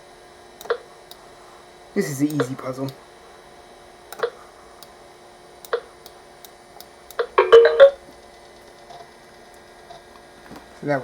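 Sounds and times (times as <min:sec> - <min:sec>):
electronic tones from computer speaker: 0:07.4 - 0:08.0.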